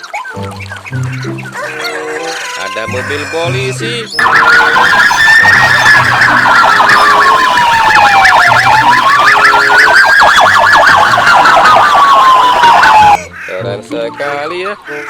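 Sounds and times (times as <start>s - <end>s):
siren fast warbling yelp: 4.1s - 13.2s
police siren wail: 4.2s - 13.2s.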